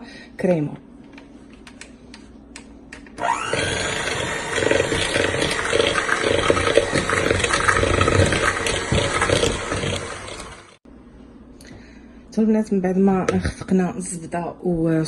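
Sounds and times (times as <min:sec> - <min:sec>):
electric mixer whining: 0:03.2 - 0:10.8.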